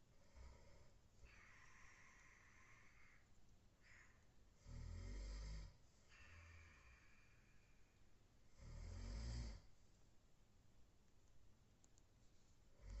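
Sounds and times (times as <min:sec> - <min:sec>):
quiet breathing: 0:00.0 - 0:10.1, 0:11.9 - 0:13.0
person snoring: 0:04.6 - 0:07.5, 0:08.5 - 0:09.7.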